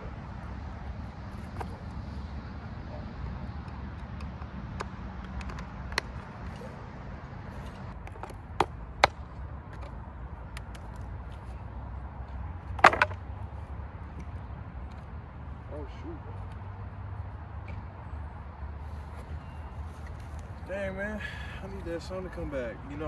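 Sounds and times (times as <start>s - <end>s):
hard objects clicking and knocking: 4.0s - 6.6s, 8.0s - 10.0s, 12.8s - 13.2s.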